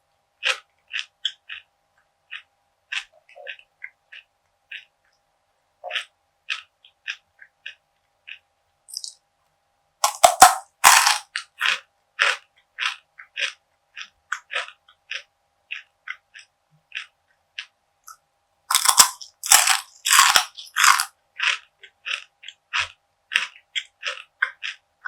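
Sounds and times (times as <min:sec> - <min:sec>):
crunchy snack being eaten: 0:05.9 - 0:09.1, 0:10.0 - 0:17.1, 0:18.7 - 0:24.8.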